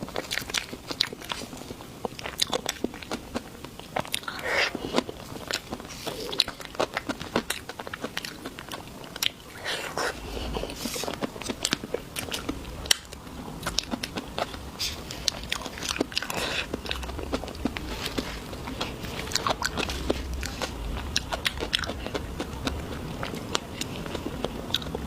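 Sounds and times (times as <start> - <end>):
mouth clicks and food crunches: 0.0 - 25.0
person biting and chewing: 0.0 - 25.0.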